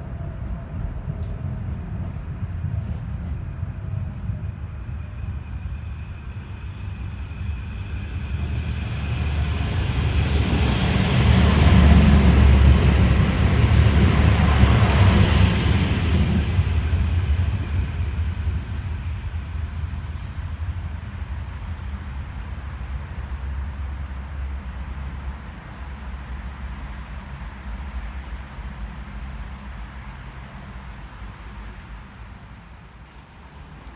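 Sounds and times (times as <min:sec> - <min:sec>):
diesel train passing: 0:00.0 - 0:33.9.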